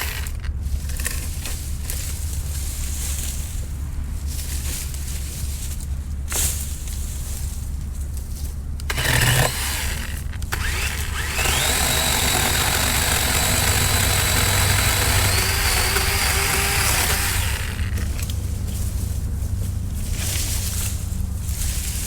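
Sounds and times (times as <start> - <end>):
electric chainsaw motor whining: 0.0 - 1.2, 8.8 - 18.3.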